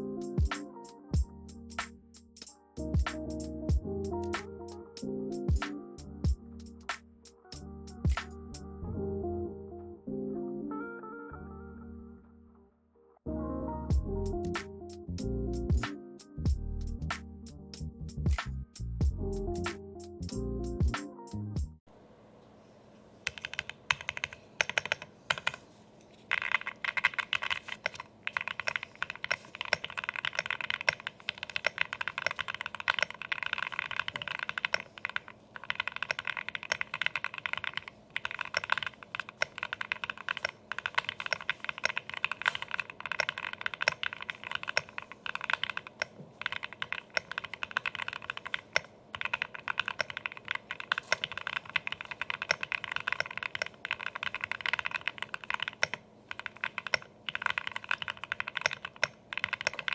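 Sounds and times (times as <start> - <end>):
mechanical keyboard typing: 23.3 - 25.6, 26.3 - 59.9.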